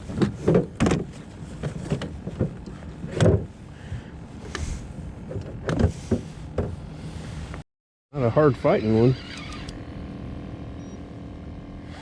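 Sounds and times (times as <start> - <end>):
low steady hum: 8.2 - 12.0.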